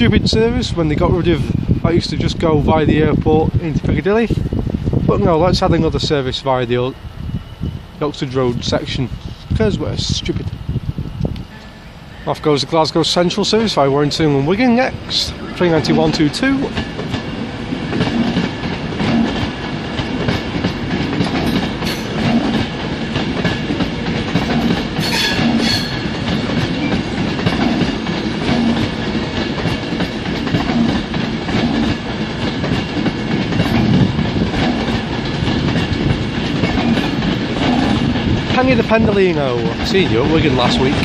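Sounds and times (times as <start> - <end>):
train wheels clattering over rail joints: 14.6 - 41.0.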